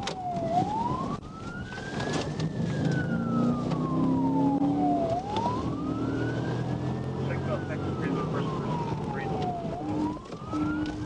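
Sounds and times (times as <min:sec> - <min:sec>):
car engine and road noise: 0:00.0 - 0:11.0
police siren wailing: 0:00.0 - 0:11.0.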